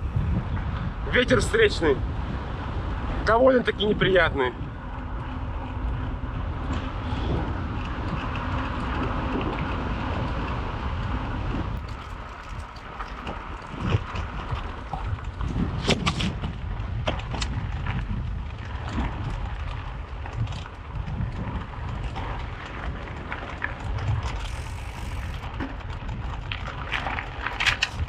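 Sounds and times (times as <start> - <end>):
bike tyre rumble: 0.0 - 28.0
wind buffeting microphone: 0.0 - 28.0
bike knocks and clatters: 11.8 - 28.0.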